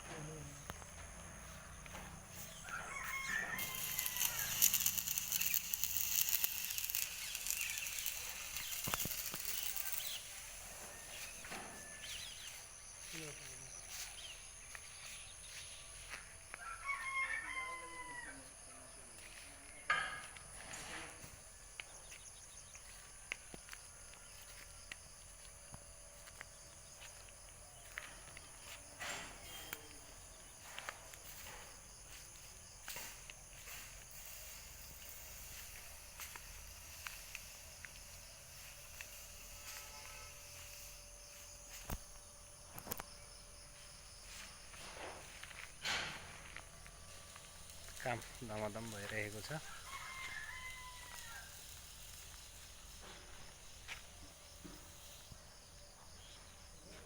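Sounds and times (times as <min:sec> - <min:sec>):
rooster crowing: 0:01.3 - 0:09.9, 0:16.5 - 0:18.7, 0:49.5 - 0:51.8.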